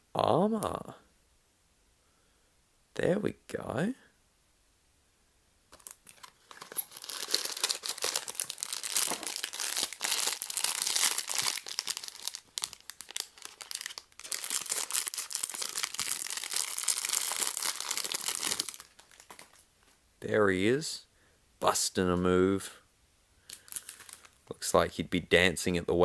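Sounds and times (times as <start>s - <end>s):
plastic wrapping crackling: 5.7s - 20.0s, 23.5s - 24.5s.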